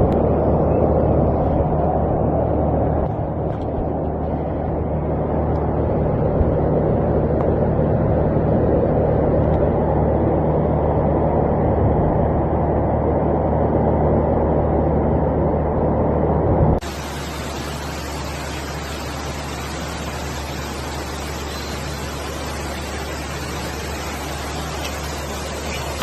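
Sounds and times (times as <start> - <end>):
low steady hum: 0.0 - 26.0
floodwater rushing: 16.8 - 26.0.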